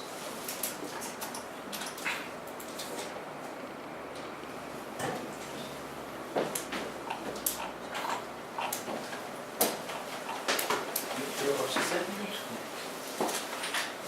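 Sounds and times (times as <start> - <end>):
sharp clicks and light knocks: 6.4 - 12.0.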